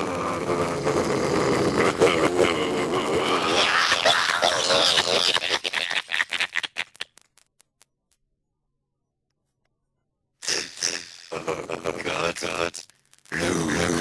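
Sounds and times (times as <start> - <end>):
garbled robotic voice: 0.0 - 5.3, 10.4 - 14.0.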